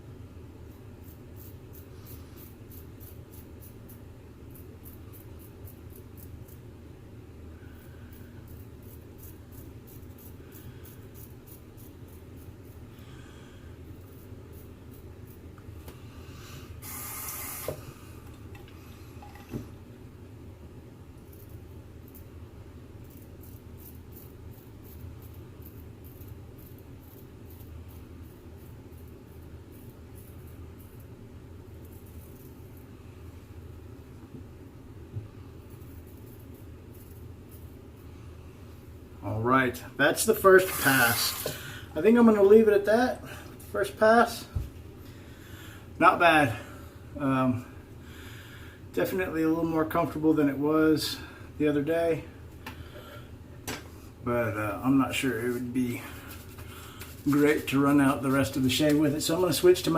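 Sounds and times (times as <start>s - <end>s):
steady low hum: 0.0s - 59.9s
razor scraping stubble: 0.7s - 6.7s, 8.2s - 12.9s, 23.0s - 31.0s, 40.4s - 41.6s.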